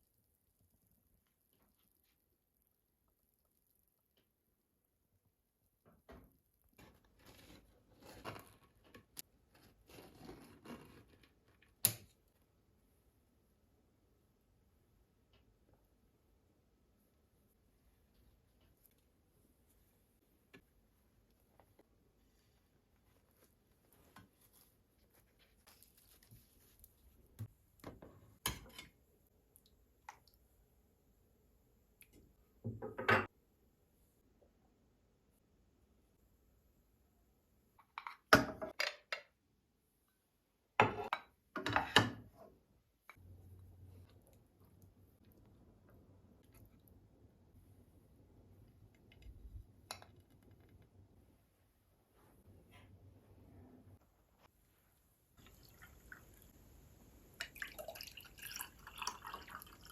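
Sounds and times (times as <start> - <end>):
rustling and handling: 17.6 - 28.7.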